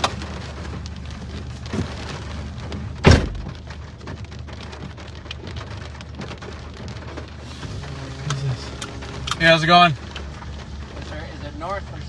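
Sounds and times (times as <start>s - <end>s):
rain pattering on a vehicle: 0.0s - 12.0s
sharp loud thud: 3.0s - 3.5s.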